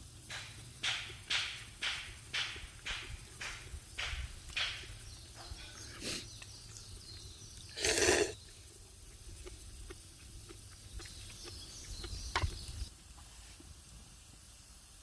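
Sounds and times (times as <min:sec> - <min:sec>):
rustle or scrape: 0:13.0 - 0:14.4.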